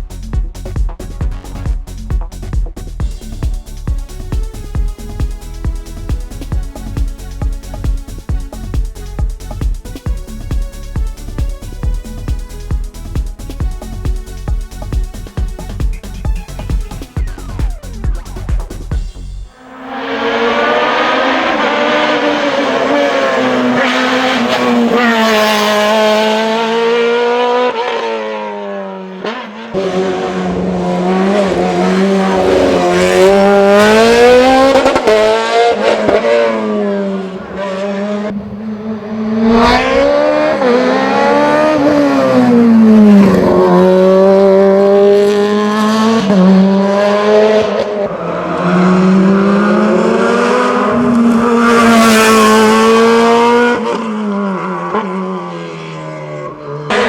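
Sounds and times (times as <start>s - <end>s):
racing engine at high revs: 19.5s - 57.0s.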